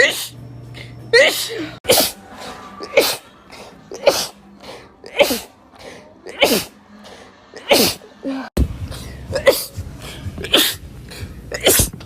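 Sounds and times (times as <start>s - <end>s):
person sneezing: 6.3s - 6.8s, 11.5s - 12.0s.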